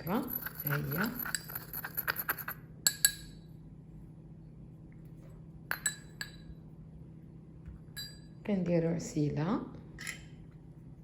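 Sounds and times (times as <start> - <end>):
glassware clinking: 5.7 - 6.5, 8.0 - 8.3.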